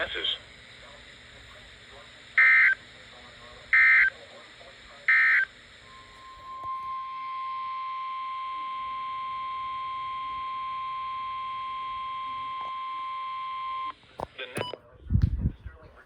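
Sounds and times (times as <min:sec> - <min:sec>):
warning alarm tones: 0:03.8 - 0:04.2, 0:05.1 - 0:14.0.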